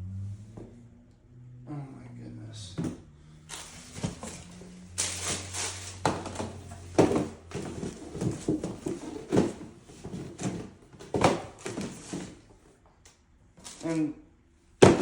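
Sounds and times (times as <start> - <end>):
shoe boxes rustling and scraping: 2.7 - 12.8, 13.6 - 14.0, 14.8 - 15.0.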